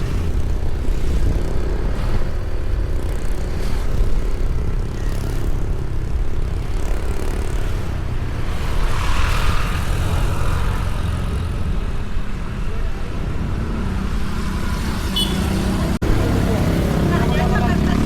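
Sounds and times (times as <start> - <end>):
vehicle rumbling on the move: 0.0 - 18.0.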